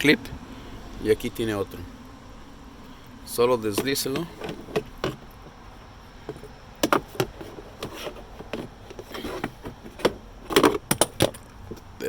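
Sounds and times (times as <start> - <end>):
plastic clicks and knocks: 3.7 - 5.5, 6.3 - 11.4.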